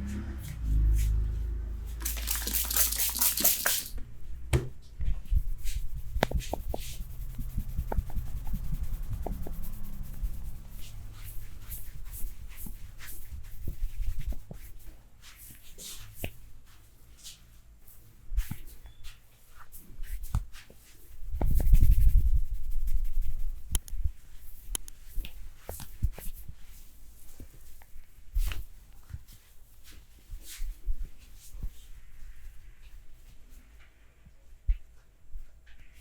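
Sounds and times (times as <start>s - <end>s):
hands rubbing skin: 2.0s - 4.0s, 5.3s - 14.4s.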